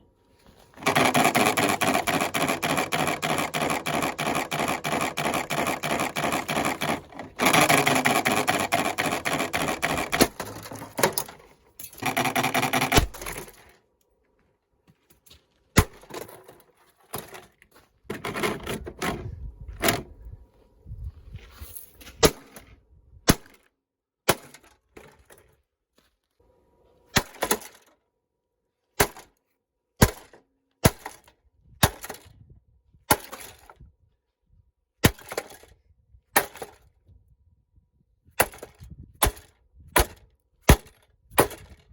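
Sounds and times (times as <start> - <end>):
loud fast rasping noise: 0.8 - 10.6.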